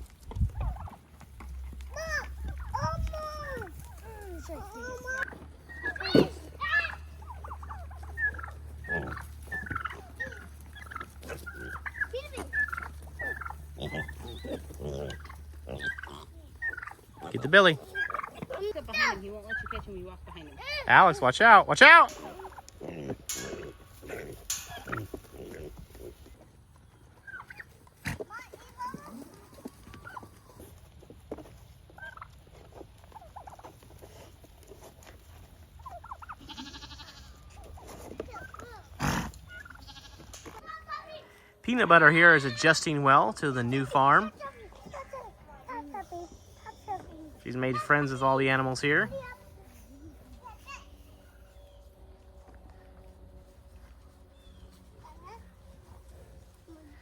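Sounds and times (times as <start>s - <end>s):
farmyard fowl calling: 0.0s - 57.0s
steady low hum: 49.0s - 57.0s.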